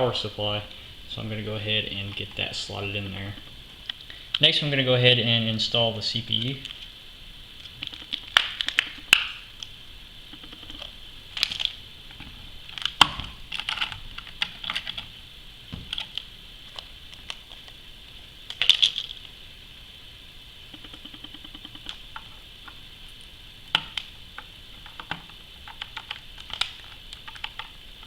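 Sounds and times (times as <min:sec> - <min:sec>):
hands handling computer parts: 0:10.6 - 0:15.1.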